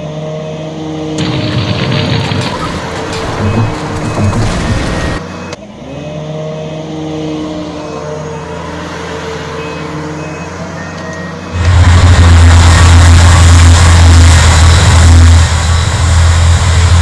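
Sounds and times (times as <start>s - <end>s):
diesel engine running: 0.0s - 17.0s
reversing alarm beeps: 3.2s - 5.6s, 9.5s - 11.6s.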